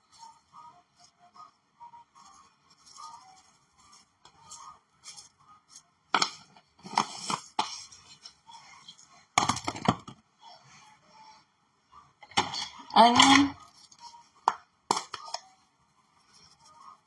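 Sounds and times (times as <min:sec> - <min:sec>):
spice containers clicking: 0:14.5 - 0:15.4.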